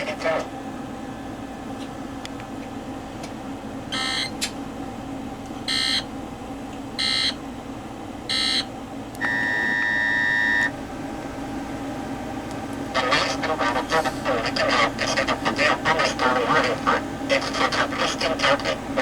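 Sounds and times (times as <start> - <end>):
steady low hum: 0.0 - 19.0
steady beep: 9.2 - 10.7.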